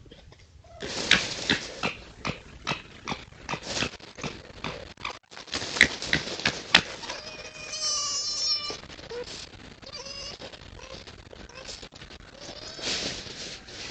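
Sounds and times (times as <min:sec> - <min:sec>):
foxes sharp harsh cries: 0:05.8 - 0:13.9
fox wavering whining cry: 0:06.9 - 0:13.2.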